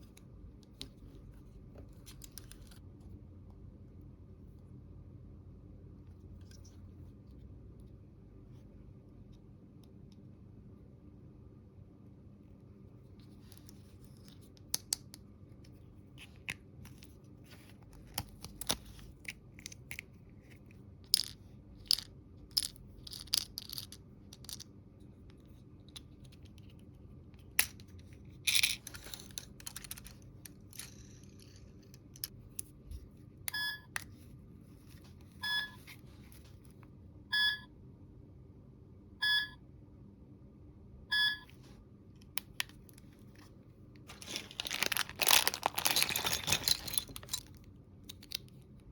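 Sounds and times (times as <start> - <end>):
plastic toy pieces clicking: 21.1 - 24.6, 44.2 - 48.5
toy electronic beeps: 35.4 - 35.8, 37.3 - 37.7, 39.2 - 39.6, 41.1 - 41.5.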